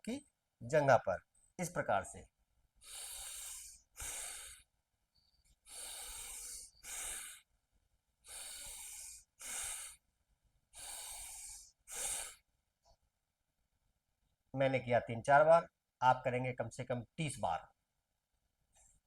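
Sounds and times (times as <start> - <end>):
deep forceful breathing: 2.8 - 4.7, 5.6 - 7.5, 8.2 - 10.0, 10.7 - 12.5.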